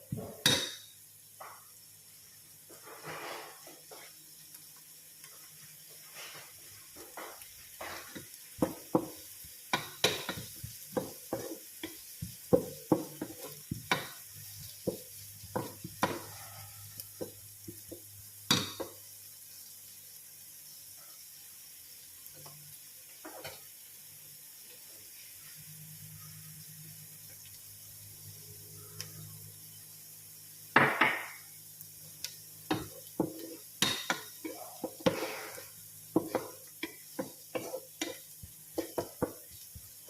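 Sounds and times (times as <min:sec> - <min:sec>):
faint sizzle of frying: 0:00.0 - 0:40.0
utensil scraping frying pan: 0:02.7 - 0:04.2, 0:06.0 - 0:09.1, 0:09.7 - 0:17.3, 0:32.7 - 0:39.7.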